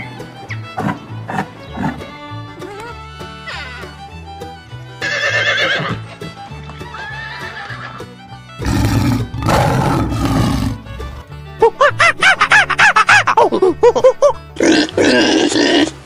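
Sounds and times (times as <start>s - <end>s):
children's background music: 0.0s - 5.0s
horse whinnying: 3.4s - 3.9s, 5.0s - 6.0s, 6.8s - 11.2s.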